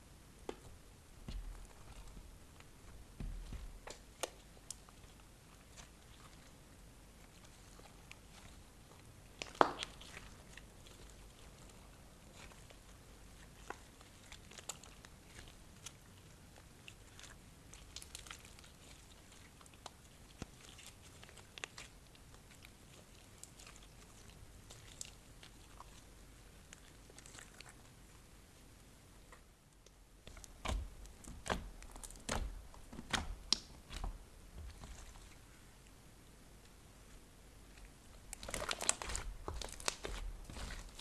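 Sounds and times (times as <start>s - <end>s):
slime clicking and popping: 9.4s - 10.2s, 30.3s - 34.0s.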